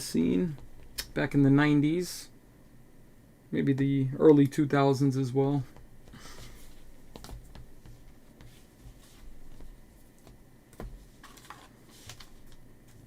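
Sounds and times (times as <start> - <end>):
card packs rustling: 10.0 - 13.0.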